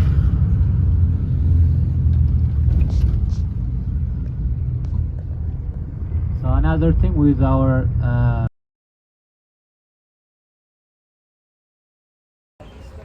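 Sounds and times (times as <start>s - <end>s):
car interior road and engine noise: 0.0s - 8.5s.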